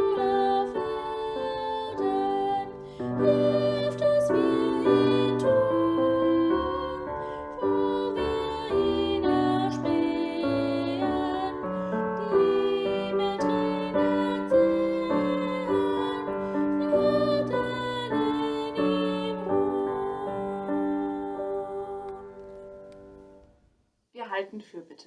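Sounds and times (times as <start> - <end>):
slow gentle piano music: 0.0 - 23.5.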